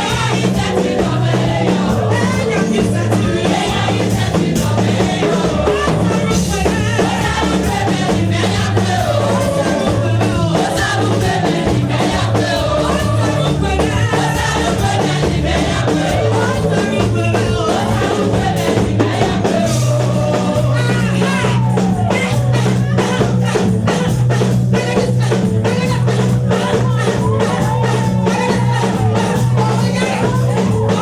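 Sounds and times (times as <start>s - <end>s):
bass line: 0.0s - 31.0s
choir singing: 0.0s - 31.0s
steady drum beat: 0.0s - 31.0s.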